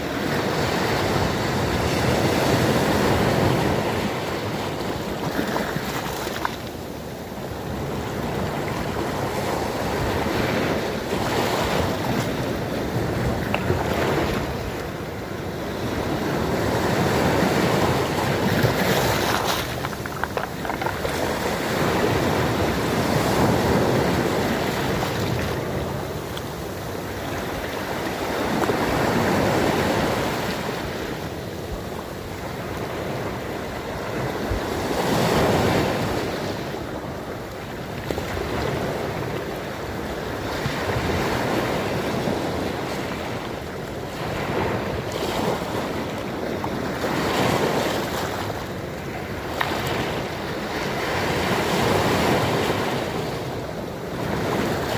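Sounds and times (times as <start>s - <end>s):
sea waves breaking ashore: 0.0s - 54.9s.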